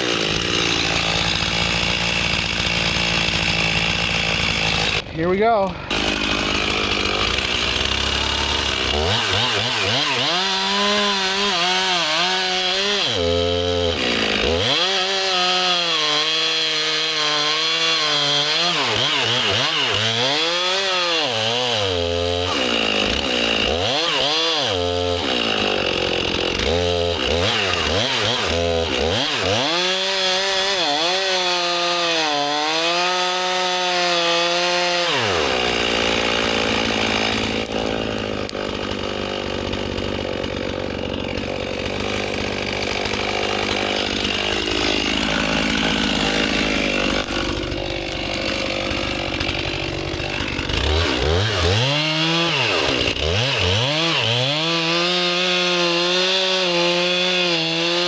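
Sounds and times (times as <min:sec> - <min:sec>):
chainsaw cutting tree: 0:00.0 - 0:58.0.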